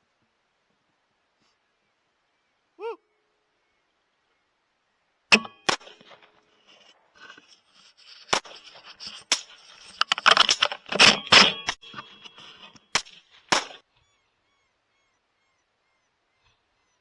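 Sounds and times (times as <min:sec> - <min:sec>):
rifle shots: 0:05.3 - 0:06.4, 0:12.9 - 0:13.8.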